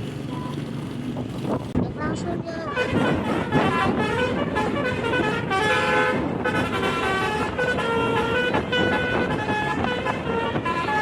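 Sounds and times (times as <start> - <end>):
bus horn playing a tune: 2.7 - 11.0.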